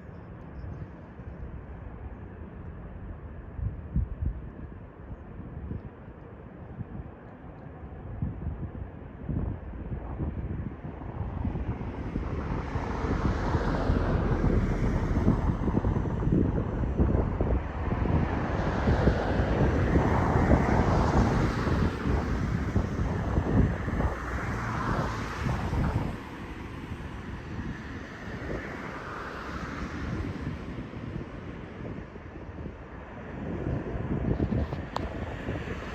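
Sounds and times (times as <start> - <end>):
wind buffeting microphone: 0.0 - 35.9
jet airliner roar: 9.4 - 35.9.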